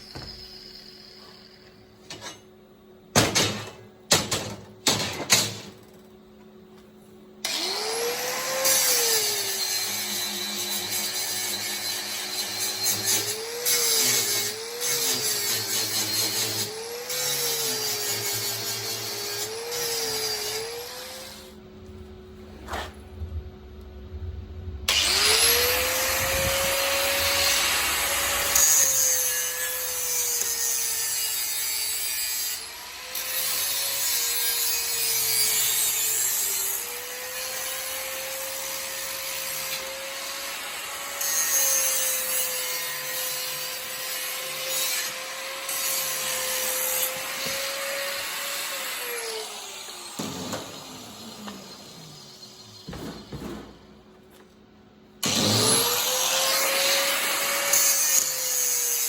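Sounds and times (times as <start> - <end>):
angle grinder motor whine: 24.7 - 30.9.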